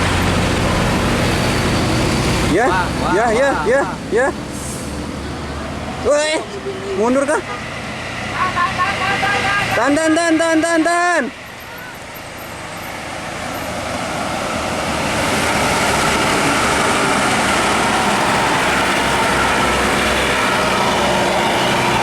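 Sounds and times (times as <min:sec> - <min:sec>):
bus engine and road noise: 0:00.0 - 0:22.0.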